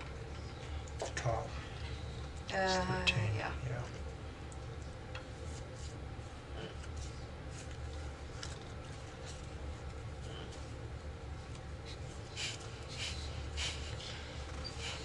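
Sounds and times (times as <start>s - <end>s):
low room hum: 0.0s - 15.0s.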